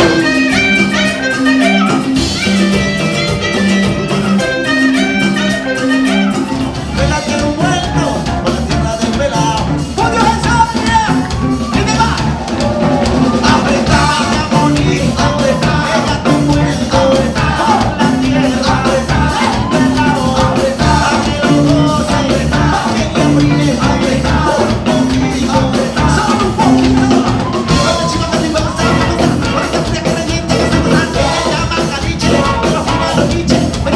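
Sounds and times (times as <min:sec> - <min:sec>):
band playing upbeat music: 0:00.0 - 0:33.9
person singing: 0:00.0 - 0:33.9
steady drum beat: 0:00.0 - 0:33.9.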